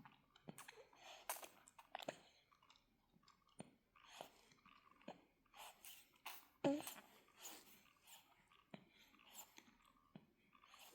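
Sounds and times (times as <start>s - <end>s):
baby sucking on a bottle: 3.4s - 10.9s.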